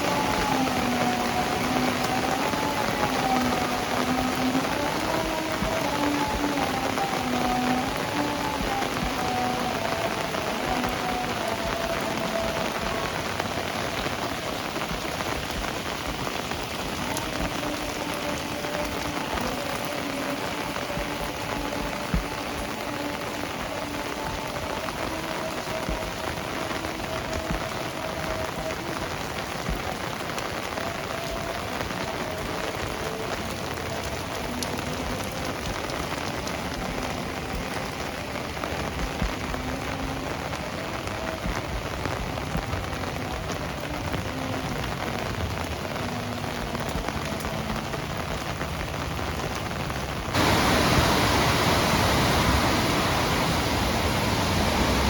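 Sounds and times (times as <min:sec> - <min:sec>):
heavy rain falling: 0:00.0 - 0:55.0
rush of water: 0:00.0 - 0:55.0.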